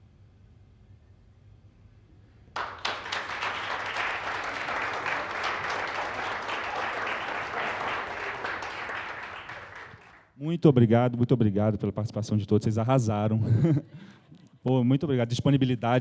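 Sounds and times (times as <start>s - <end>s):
audience applause: 2.6s - 10.3s.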